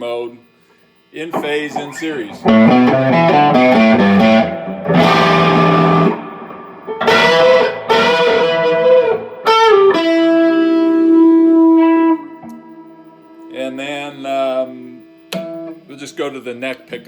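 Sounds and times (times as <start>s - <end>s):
electric guitar chords strummed: 1.3s - 17.0s.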